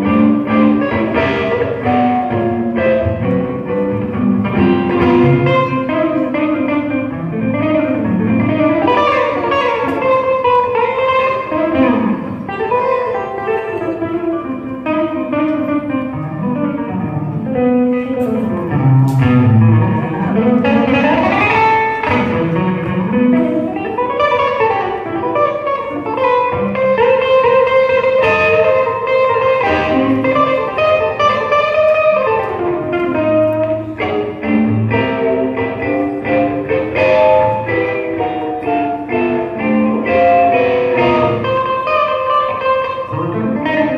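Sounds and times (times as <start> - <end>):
electric guitar with whammy bends: 0.0 - 43.9.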